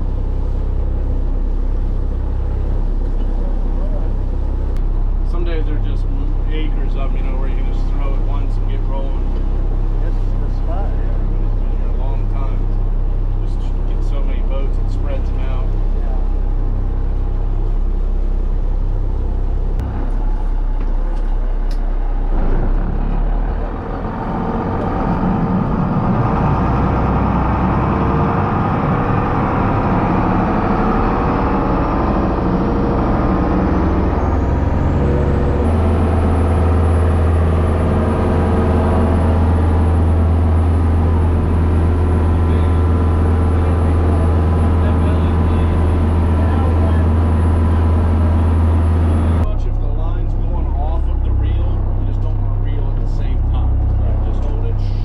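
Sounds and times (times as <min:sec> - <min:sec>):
boat engine humming: 0:00.0 - 0:55.0.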